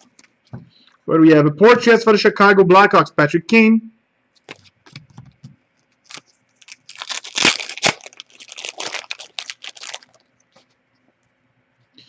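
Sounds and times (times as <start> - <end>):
wrapper tearing and crinkling: 6.0 - 10.2.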